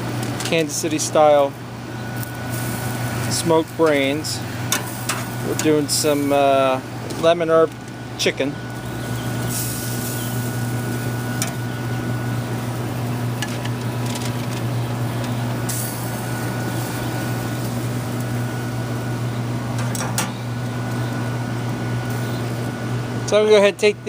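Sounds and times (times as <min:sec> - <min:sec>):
low machine hum: 0:00.0 - 0:24.0.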